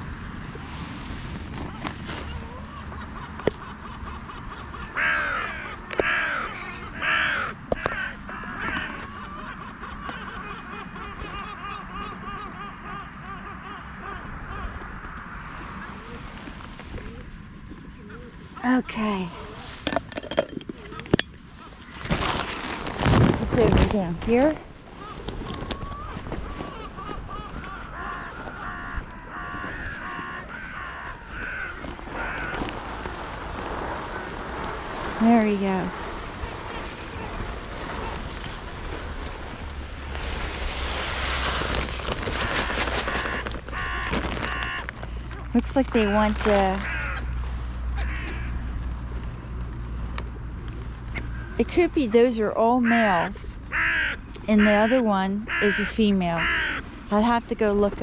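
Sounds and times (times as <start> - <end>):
crow cawing: 4.9 - 9.5, 26.0 - 32.6, 43.2 - 44.9, 46.8 - 47.4, 48.0 - 48.7, 52.8 - 56.8.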